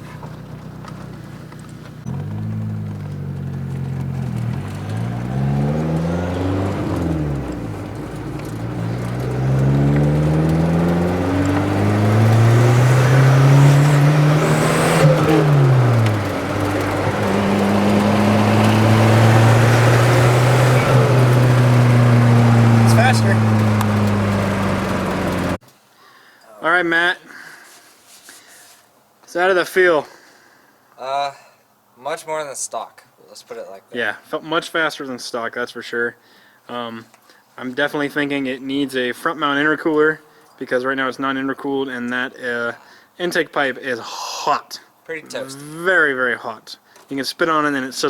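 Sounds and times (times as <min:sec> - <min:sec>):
car engine accelerating: 0:00.0 - 0:25.6.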